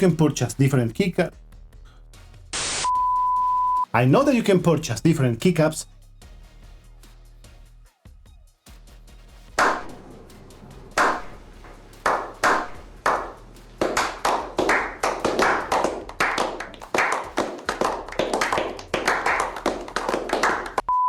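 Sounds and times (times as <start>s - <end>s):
sharp percussive claps: 9.6s - 10.0s, 11.0s - 20.9s.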